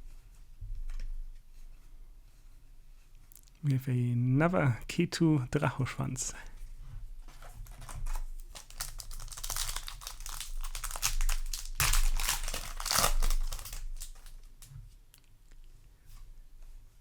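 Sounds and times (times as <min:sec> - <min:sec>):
foil wrapper crinkling and tearing: 0:07.4 - 0:14.8.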